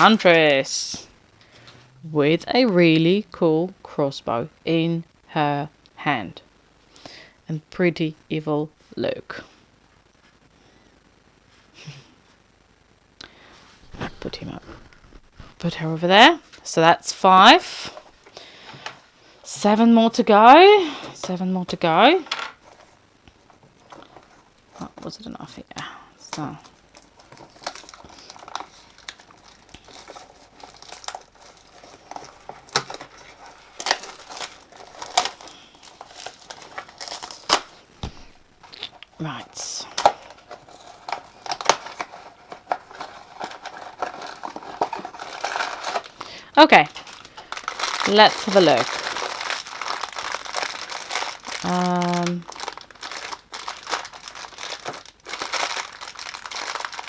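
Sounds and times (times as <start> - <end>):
toy package crinkling: 0.0 - 1.0, 13.8 - 16.0, 26.3 - 57.0.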